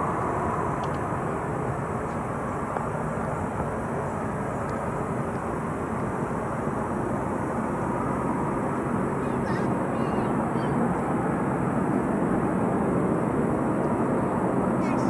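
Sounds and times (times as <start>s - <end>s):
low rushing noise: 0.0s - 14.8s.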